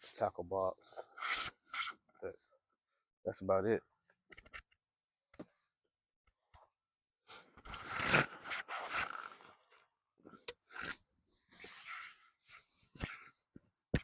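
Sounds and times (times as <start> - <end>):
fishing gear rustling and scraping: 7.5 - 13.5.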